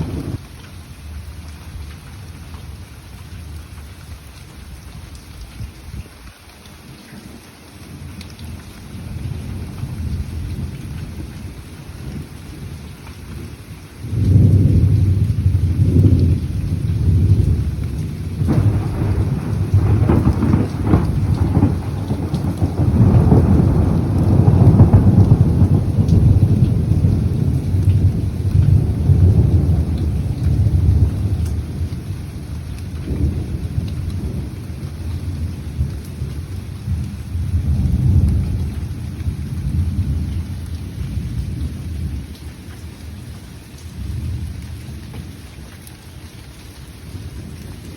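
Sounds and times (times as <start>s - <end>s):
thunder rumbling: 0.0s - 0.4s, 8.4s - 12.8s, 13.4s - 42.4s
steady rain: 0.0s - 47.9s.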